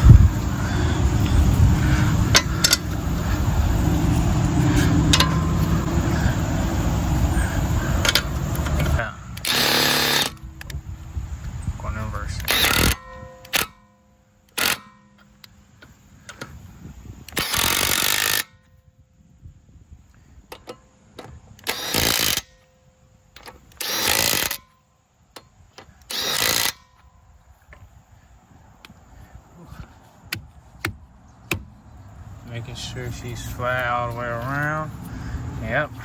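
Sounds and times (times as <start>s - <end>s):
impact wrench hammering: 2.3s - 3.0s, 5.1s - 6.0s, 30.3s - 31.8s.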